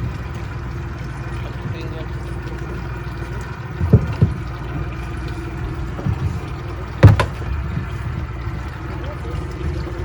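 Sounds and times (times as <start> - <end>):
boat motor idling: 0.0 - 10.0
short knocks: 7.0 - 7.9.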